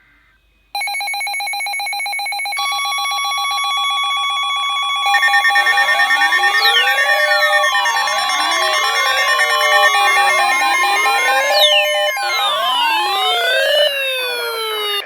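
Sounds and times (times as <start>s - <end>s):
pulsing electronic ringing tone: 2.6s - 15.0s
steady electronic tones: 4.7s - 15.0s
rising and falling sliding tones: 5.1s - 15.0s.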